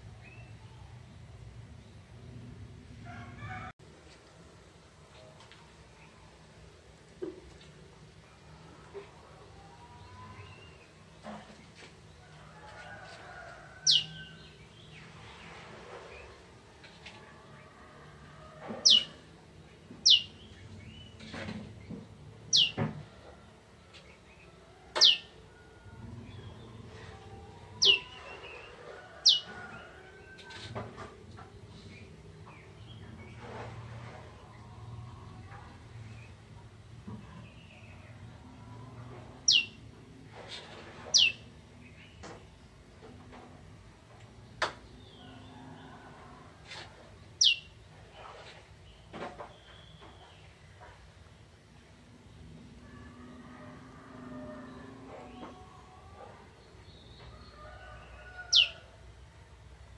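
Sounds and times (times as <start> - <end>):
bird giving high downward calls: 27.8 - 28.4, 39.5 - 39.8, 41.1 - 41.4.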